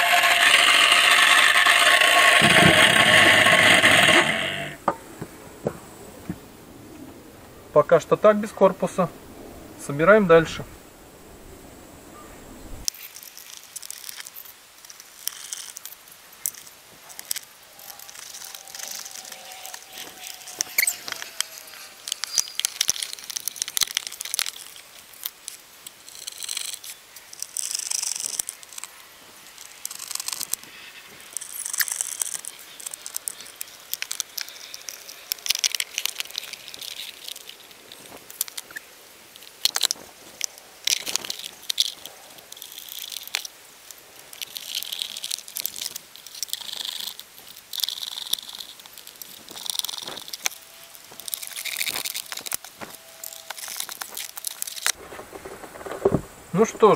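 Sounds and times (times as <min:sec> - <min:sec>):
rustling: 0:12.4 - 0:56.9.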